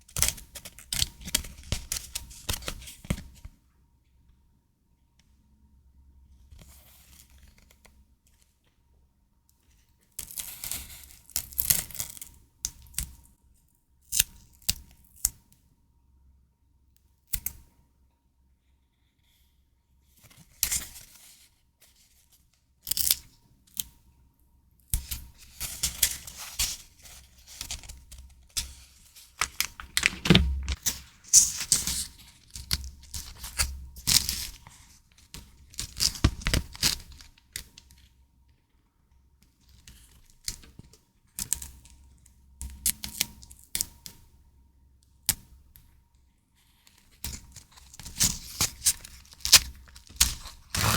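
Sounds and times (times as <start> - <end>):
packaging tearing and crinkling: 29.4 - 34.7, 35.7 - 37.3, 47.5 - 50.9.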